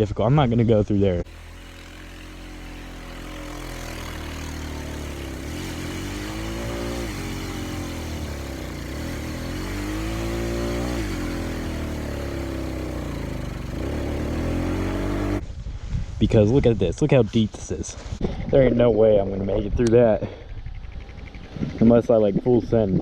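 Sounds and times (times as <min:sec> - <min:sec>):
atv engine revving: 0:01.2 - 0:15.4, 0:19.6 - 0:23.0.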